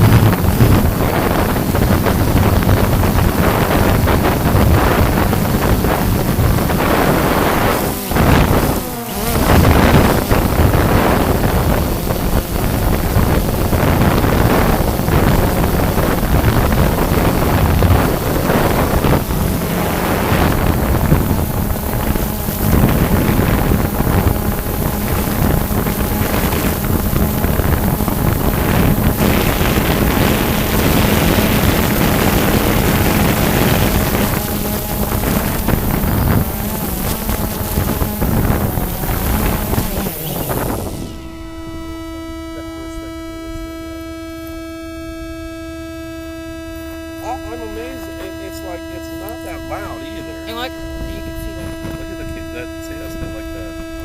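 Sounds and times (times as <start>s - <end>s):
drone propellers buzzing: 0.0s - 54.0s
wind on microphone: 0.0s - 54.0s.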